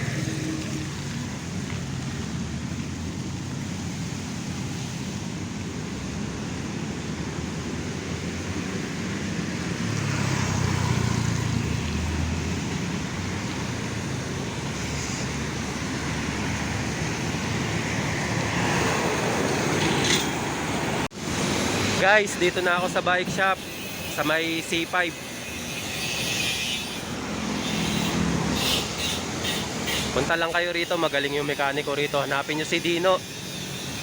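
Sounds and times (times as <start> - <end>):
passing vehicle rumble: 0.0 - 22.6
road traffic hiss: 0.0 - 34.0.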